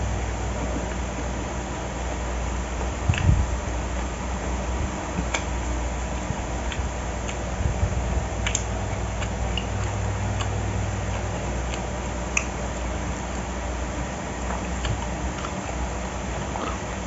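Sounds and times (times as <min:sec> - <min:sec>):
steady low hum: 0:00.0 - 0:17.0
person chewing food: 0:08.4 - 0:13.7, 0:14.3 - 0:17.0.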